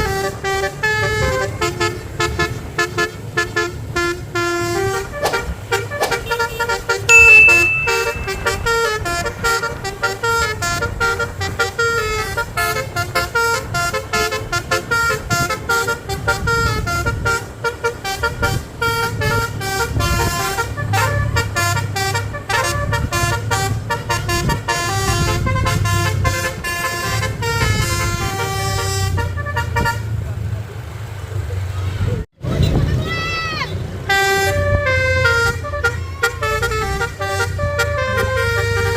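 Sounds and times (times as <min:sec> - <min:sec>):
bus air horn melody: 0:00.0 - 0:30.1, 0:34.1 - 0:38.9
shrill high tone: 0:07.1 - 0:08.8.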